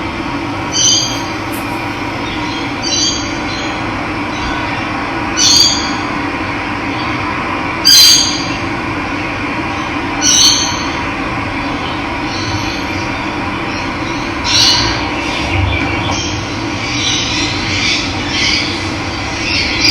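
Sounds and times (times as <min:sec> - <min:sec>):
running water: 0:00.6 - 0:02.9
bird squealing call: 0:00.6 - 0:03.0.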